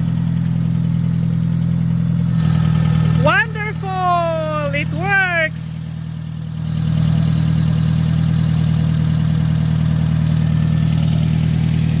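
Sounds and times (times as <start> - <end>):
car engine running: 0.0 - 12.0.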